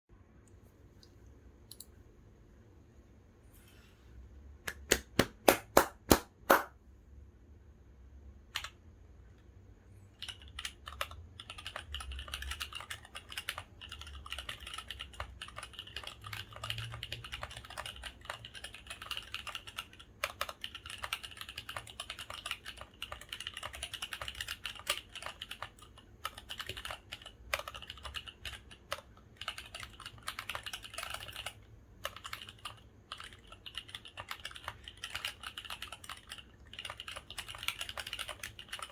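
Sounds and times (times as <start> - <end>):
mechanical keyboard typing: 8.6 - 8.8, 10.1 - 38.9.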